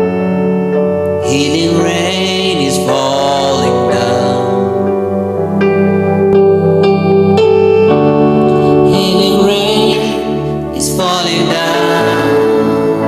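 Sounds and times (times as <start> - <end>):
sustained keyboard chords: 0.0 - 13.0.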